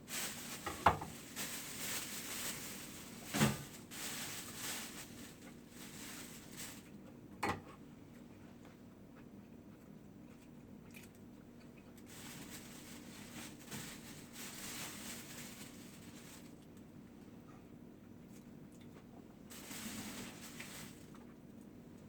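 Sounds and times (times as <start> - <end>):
person chewing food: 9.2 - 12.1.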